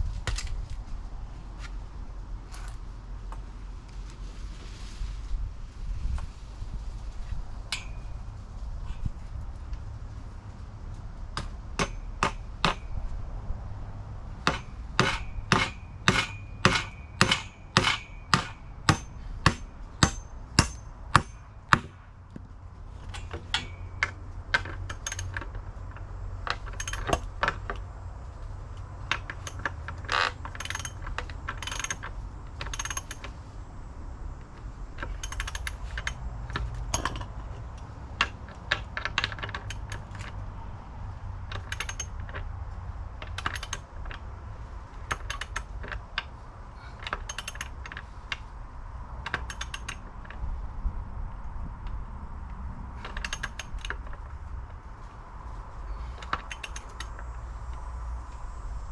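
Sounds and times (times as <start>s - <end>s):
hammer striking nail: 11.4s - 12.9s, 14.5s - 22.1s
tools and hardware clattering: 14.4s - 22.0s, 22.8s - 27.8s, 29.0s - 33.4s, 34.5s - 40.4s, 41.5s - 42.6s, 43.2s - 44.3s, 44.9s - 48.5s, 49.2s - 50.4s, 53.0s - 55.1s.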